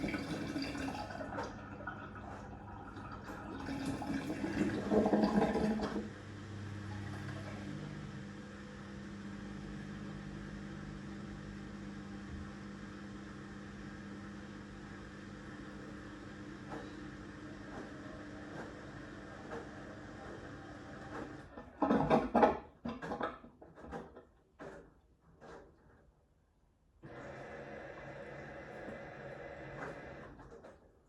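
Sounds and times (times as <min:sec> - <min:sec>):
low motor hum: 0:00.0 - 0:21.5
water rushing through washing machine: 0:00.0 - 0:24.8, 0:27.0 - 0:30.8.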